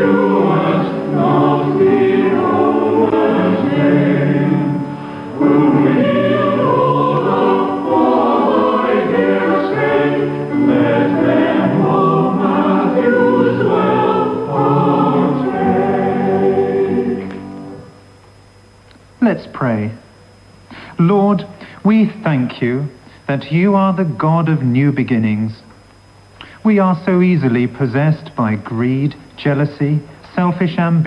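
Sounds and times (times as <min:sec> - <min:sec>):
choir singing: 0:00.0 - 0:18.0.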